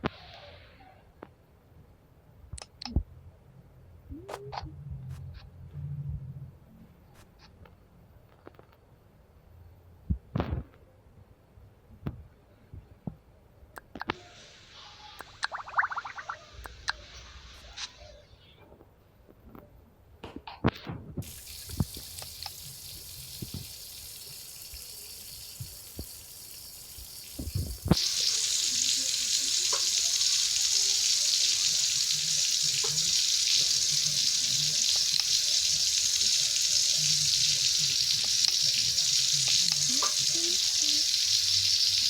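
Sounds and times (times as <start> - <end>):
water running: 15.2 - 17.6, 21.2 - 42.0.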